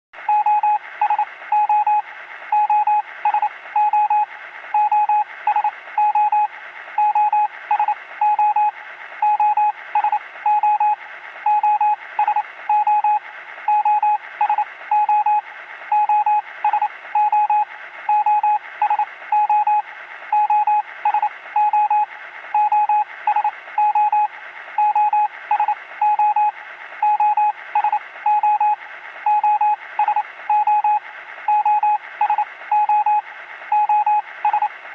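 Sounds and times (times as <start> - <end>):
morse code beeping: 21.6 - 34.7.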